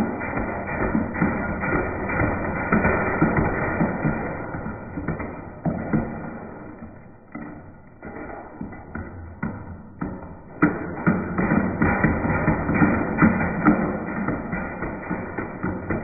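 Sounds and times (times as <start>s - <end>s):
electric fan running: 0.0s - 5.6s
screwdriver knocking fan blades: 0.0s - 6.1s, 6.7s - 16.0s.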